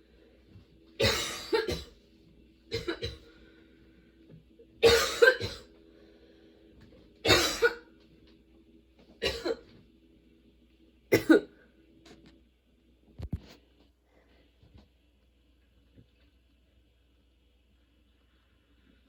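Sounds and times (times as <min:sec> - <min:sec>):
woman coughing: 0:01.0 - 0:02.0, 0:02.7 - 0:03.3, 0:04.8 - 0:05.7, 0:07.3 - 0:07.9, 0:09.2 - 0:09.7, 0:11.1 - 0:11.6.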